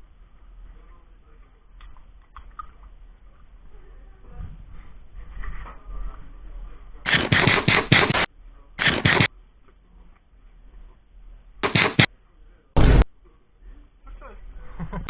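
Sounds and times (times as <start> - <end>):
airsoft gun firing bursts: 7.1 - 9.3, 11.6 - 12.1, 12.8 - 13.0.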